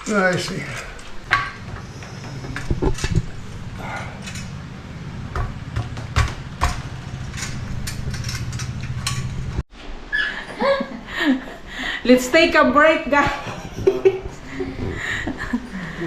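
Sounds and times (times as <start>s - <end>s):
steady low hum: 0.0s - 9.7s
metal parts clinking and knocking: 0.1s - 9.6s.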